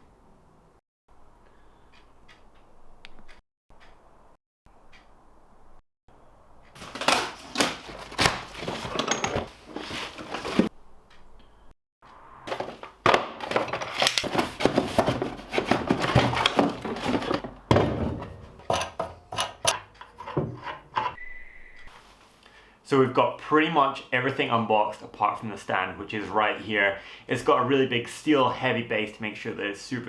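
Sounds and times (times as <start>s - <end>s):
tools and packaging handled: 6.8s - 10.7s, 12.5s - 20.7s.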